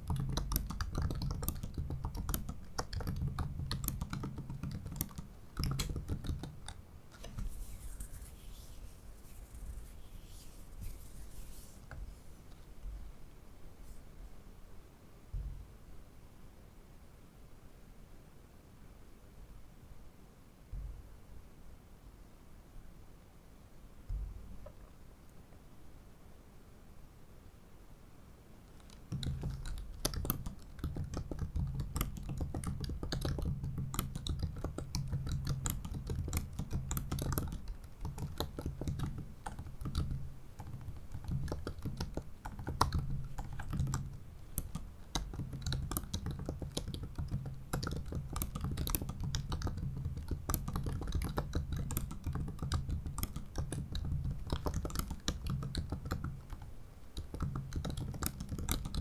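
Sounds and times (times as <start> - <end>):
laptop keyboard typing: 0.0 - 8.7, 28.8 - 59.0.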